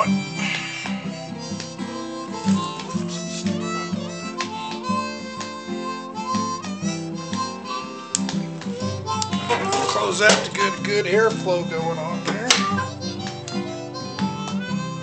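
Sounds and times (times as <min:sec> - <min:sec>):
bluesy harmonica and guitar music: 0:00.0 - 0:15.0.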